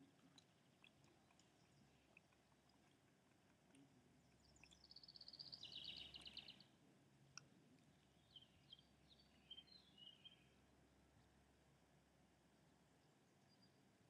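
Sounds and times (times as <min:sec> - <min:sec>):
bird chirps: 0:04.2 - 0:06.7, 0:07.8 - 0:10.6, 0:13.0 - 0:13.8
songbird trilling: 0:04.4 - 0:06.7, 0:08.2 - 0:10.5.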